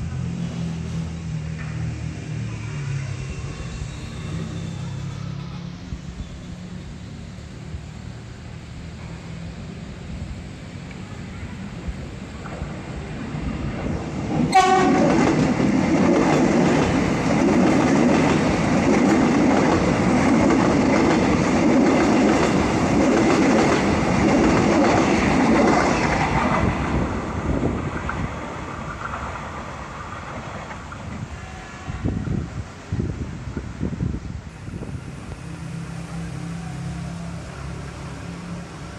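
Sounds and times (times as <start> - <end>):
rumble of train carriages: 8.8 - 38.9
train wheels clattering over rails: 14.4 - 31.2
train horn blast: 14.5 - 15.3, 31.2 - 32.4.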